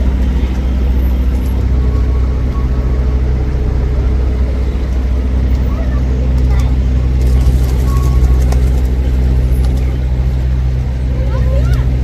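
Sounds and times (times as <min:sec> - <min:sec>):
low engine-like hum: 0:00.0 - 0:12.0.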